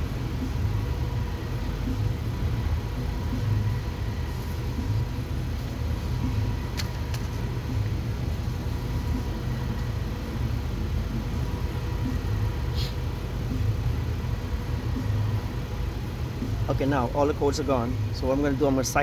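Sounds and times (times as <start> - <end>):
faint high whine: 0.0 - 19.0
low engine-like rumble: 0.0 - 19.0
brief hiss: 12.7 - 13.0.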